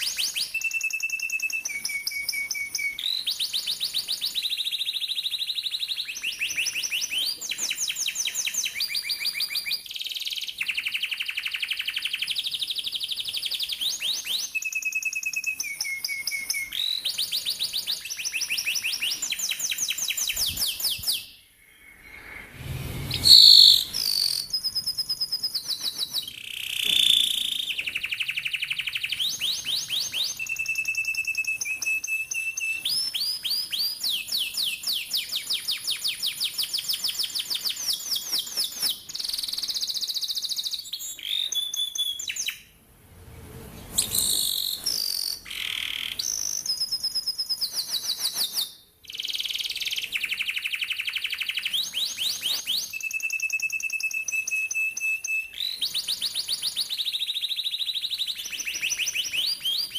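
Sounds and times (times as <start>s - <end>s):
canary trilling song: 0.0s - 42.7s, 43.8s - 59.9s.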